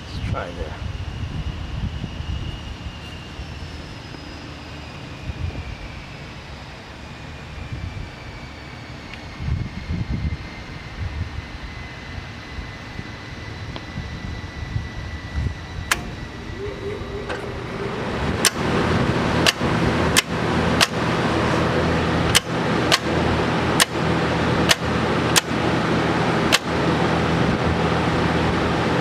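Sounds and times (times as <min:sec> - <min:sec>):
welder fan and mains hum: 0:00.0 - 0:29.0
sharp clicks: 0:15.9 - 0:23.2, 0:23.8 - 0:25.7, 0:26.5 - 0:26.8.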